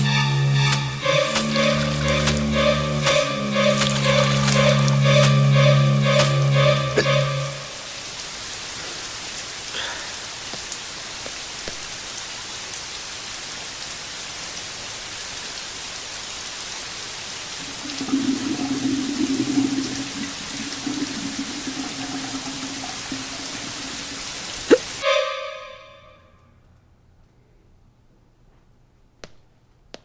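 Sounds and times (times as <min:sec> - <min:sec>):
low wavering hum: 0:00.0 - 0:07.6
rain falling: 0:00.0 - 0:25.0.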